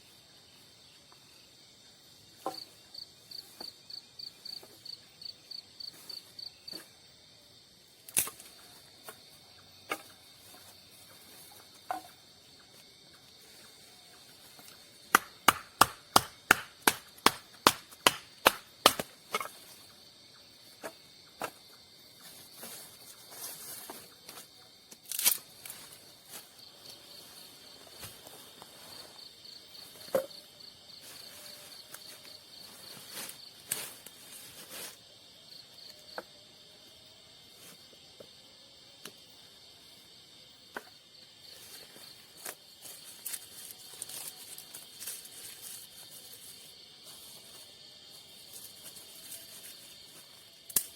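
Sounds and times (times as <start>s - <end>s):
cricket chirping: 0.0s - 50.9s
sharp knocks: 15.1s - 19.1s.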